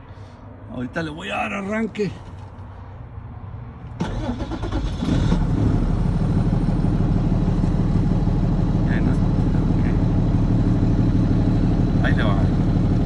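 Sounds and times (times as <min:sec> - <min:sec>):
diesel engine cranking and running: 0:03.9 - 0:13.0.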